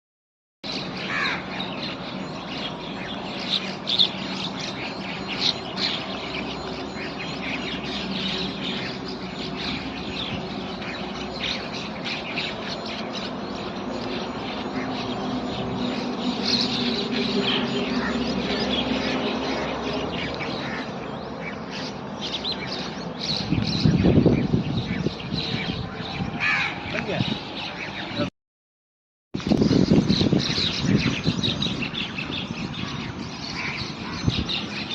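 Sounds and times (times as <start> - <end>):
birds chirping and calling: 0.6 - 28.3, 29.4 - 34.9
crows cawing: 1.0 - 1.6, 17.4 - 19.2, 26.4 - 27.0.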